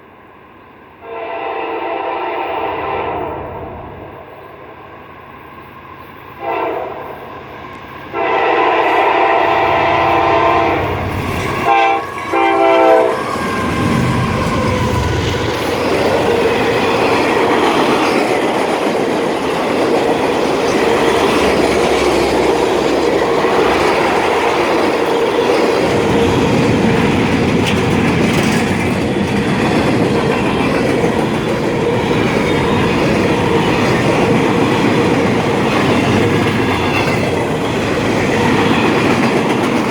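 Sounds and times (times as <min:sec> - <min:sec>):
locomotive horn blasts: 0:01.0 - 0:03.4, 0:06.4 - 0:07.2, 0:08.1 - 0:13.2
train wheels clacking over rails: 0:07.7 - 0:39.9.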